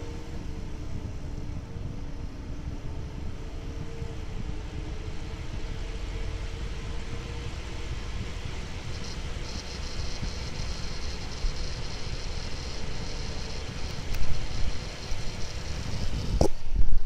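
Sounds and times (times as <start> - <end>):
graphics card fans mechanical noise: 0.0 - 17.0
steady tone: 0.0 - 17.0
high fluttering rattle: 8.1 - 17.0.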